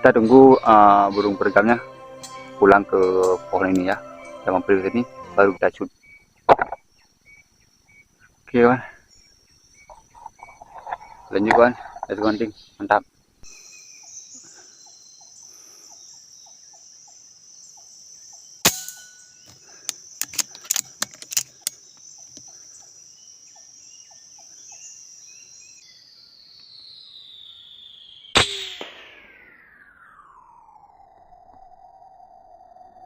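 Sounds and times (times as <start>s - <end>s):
high-pitched insect drone: 0.0s - 6.2s, 13.5s - 33.0s
sharp crack: 18.7s - 19.2s, 28.4s - 29.7s
quick run of clicks: 19.5s - 22.5s.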